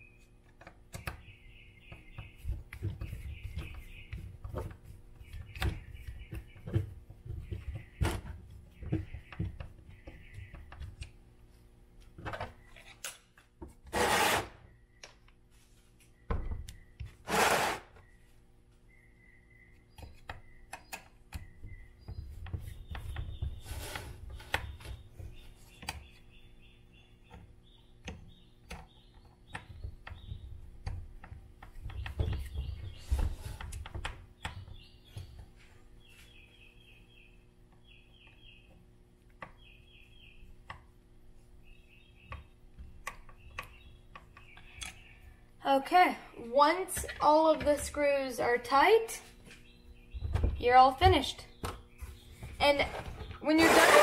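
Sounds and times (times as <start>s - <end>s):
scraping bursts: 17.2s - 18.0s, 52.8s - 54.0s.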